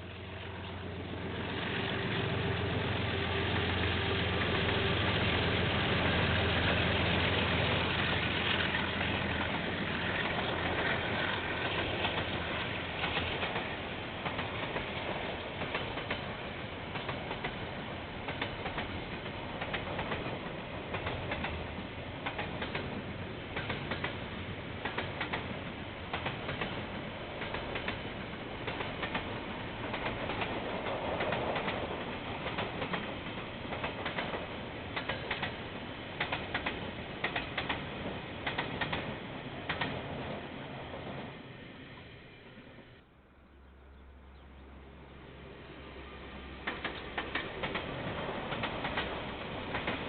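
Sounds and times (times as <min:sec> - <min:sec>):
train rumbling past: 0:00.0 - 0:50.0
wheels clicking over rail joints: 0:07.5 - 0:40.4, 0:46.6 - 0:50.0.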